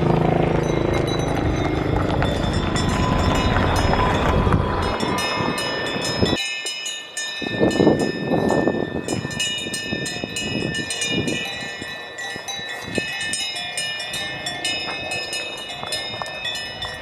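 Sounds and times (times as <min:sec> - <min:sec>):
cowbells clanking and ringing: 0:00.6 - 0:04.0, 0:04.9 - 0:17.0.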